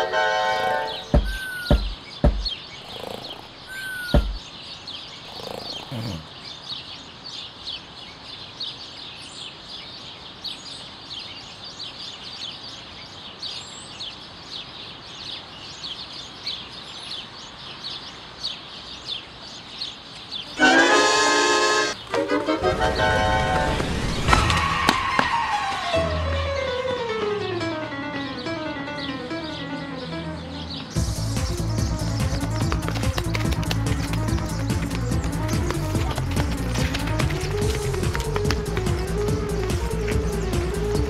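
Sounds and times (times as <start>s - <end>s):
small birds chirping: 0.7s - 20.8s, 28.2s - 41.0s
sharp knocks: 1.1s - 2.6s, 4.1s - 4.4s
short falling whistles: 1.3s - 1.7s.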